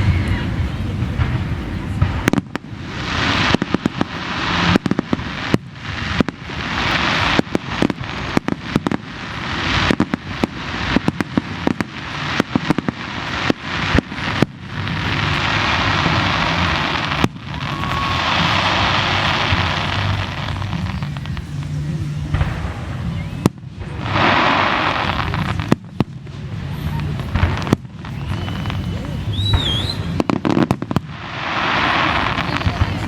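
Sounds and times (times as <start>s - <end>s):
fireworks crackling hiss: 0.0s - 33.0s
fireworks shells bursting: 27.0s - 33.0s.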